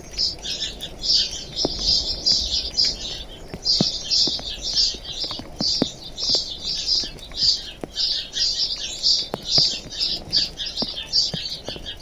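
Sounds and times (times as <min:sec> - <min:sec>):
raindrops ticking: 0:00.0 - 0:12.0
small birds chirping: 0:00.0 - 0:12.0.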